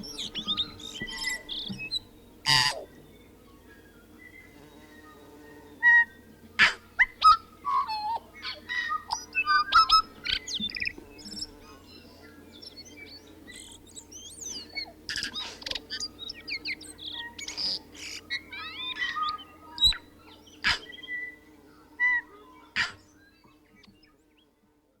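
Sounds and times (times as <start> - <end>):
bird singing whistled notes: 0.0 - 2.2.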